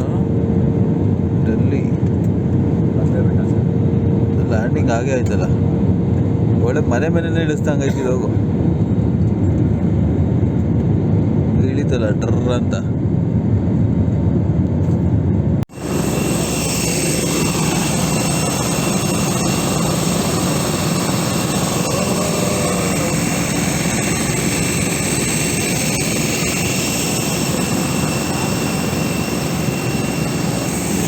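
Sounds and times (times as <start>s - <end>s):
jet engines rushing and whining: 0.0s - 31.0s
falling whine: 15.7s - 31.0s.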